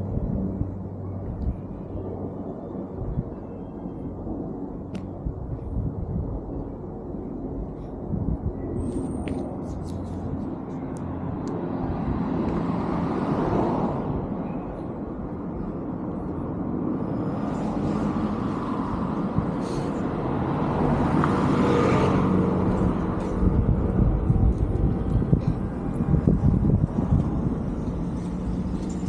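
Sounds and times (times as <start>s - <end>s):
cars passing: 8.8s - 29.0s.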